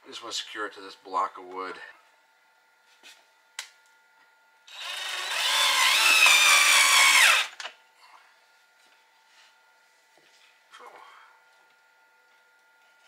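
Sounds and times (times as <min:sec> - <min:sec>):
drill click: 0:04.7 - 0:07.7
power drill driving screw into wood: 0:04.7 - 0:07.7.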